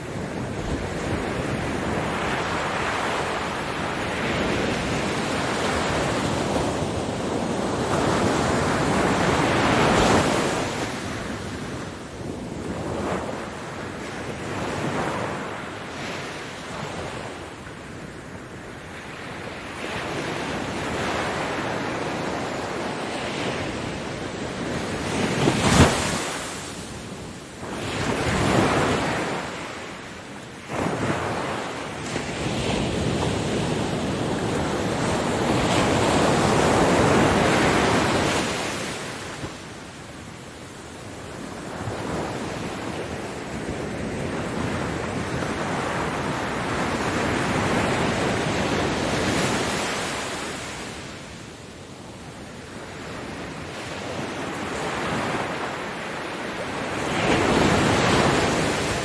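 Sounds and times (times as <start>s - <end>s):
ocean waves breaking: 19.5s - 51.4s, 52.3s - 59.0s.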